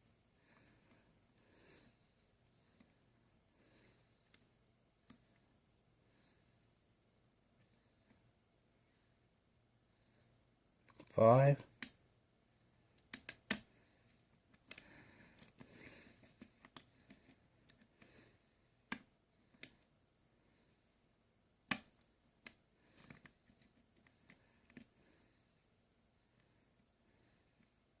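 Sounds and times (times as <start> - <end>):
lock pick clicking and scraping: 15.4 - 18.0, 22.4 - 24.9.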